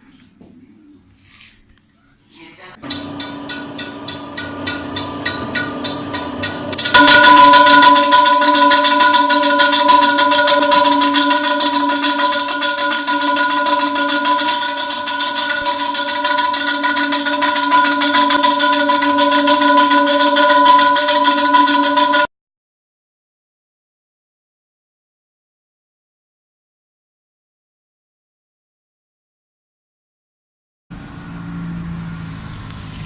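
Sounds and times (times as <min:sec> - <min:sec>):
steel wheel rim ringing on lathe: 0:02.8 - 0:22.3.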